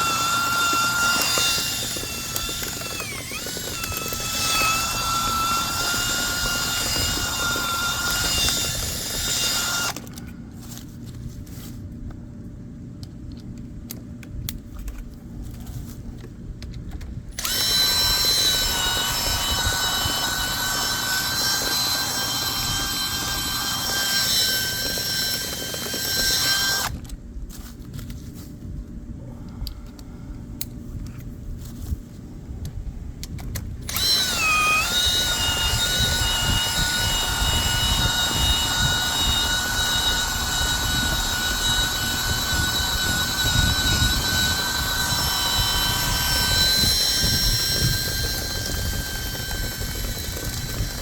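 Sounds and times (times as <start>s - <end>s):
power drill motor whining: 0.0s - 10.2s, 17.4s - 27.1s, 33.8s - 51.0s.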